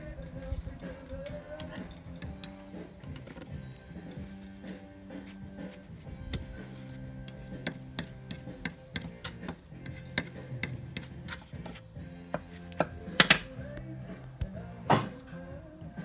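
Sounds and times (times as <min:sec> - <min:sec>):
background music: 0:00.0 - 0:16.0
bad bearing clicking and knocking: 0:01.2 - 0:04.4, 0:06.3 - 0:13.8.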